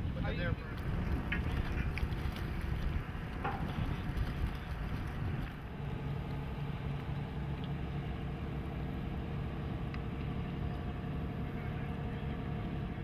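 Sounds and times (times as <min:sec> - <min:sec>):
boat engine humming: 0:00.0 - 0:13.0.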